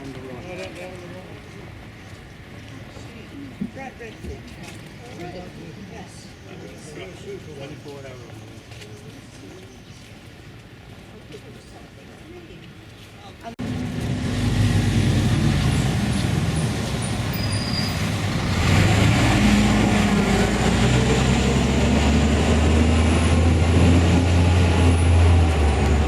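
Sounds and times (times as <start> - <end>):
traffic noise: 0.0 - 26.0
large vehicle engine running: 13.6 - 26.0.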